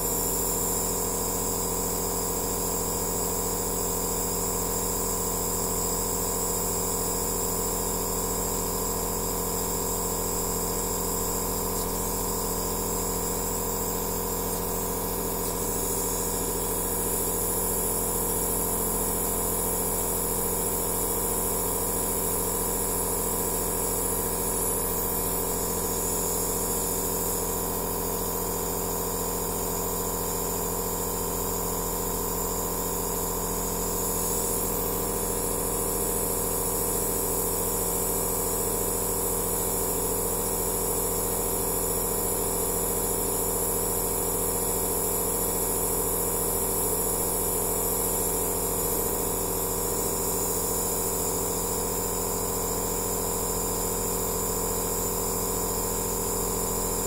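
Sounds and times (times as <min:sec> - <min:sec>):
nebulizer motor humming: 0:09.0 - 0:28.8.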